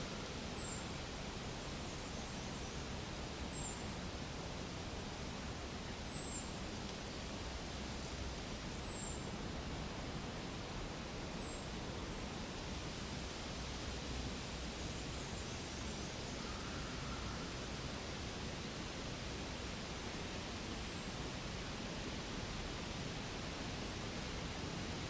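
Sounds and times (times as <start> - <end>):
forest ambience hiss: 0.0 - 25.0.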